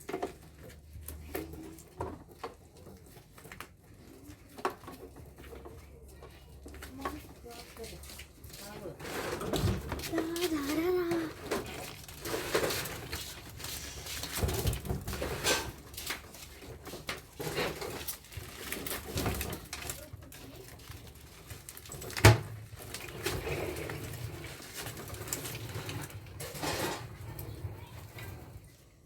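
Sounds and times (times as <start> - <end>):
parts and tools clattering: 11.1 - 28.7.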